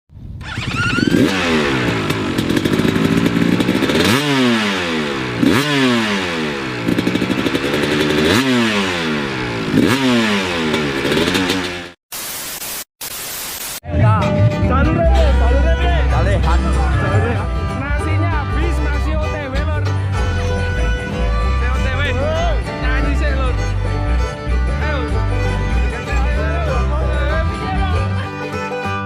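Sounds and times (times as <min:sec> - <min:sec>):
motorcycle engine revving: 0:00.4 - 0:12.0, 0:15.4 - 0:28.0
short bursts of hiss: 0:12.1 - 0:13.8.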